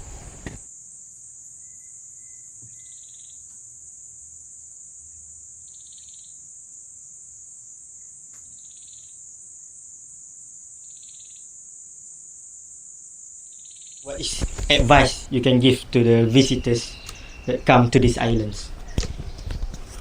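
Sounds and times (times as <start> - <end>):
short pulsed insect call: 0.0 - 19.7
high-pitched insect drone: 7.7 - 19.0.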